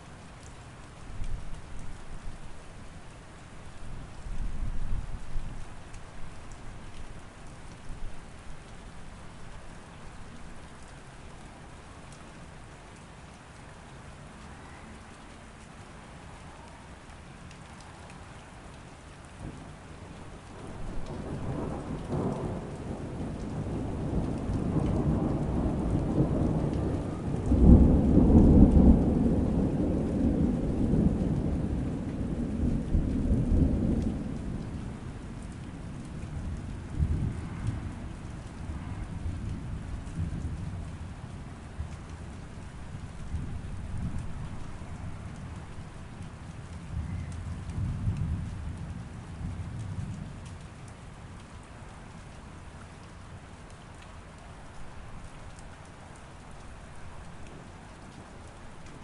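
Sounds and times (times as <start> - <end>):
steady rain: 0.0 - 59.0
rolling thunder: 20.6 - 35.1, 35.8 - 41.1.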